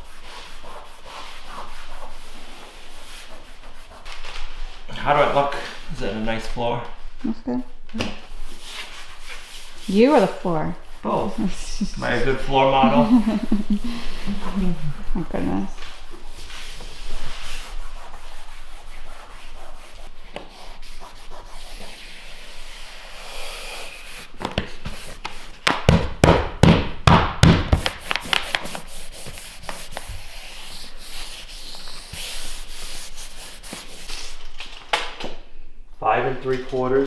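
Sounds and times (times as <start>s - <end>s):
knocks on flooring: 25.6s - 28.4s.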